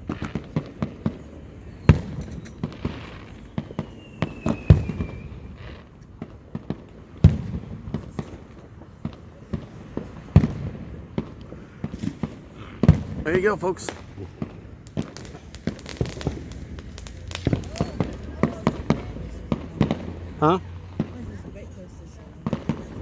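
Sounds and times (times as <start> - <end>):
firework bangs and pops: 0.0 - 23.0
firework booms: 0.0 - 23.0
faint falling whistle: 3.2 - 5.6.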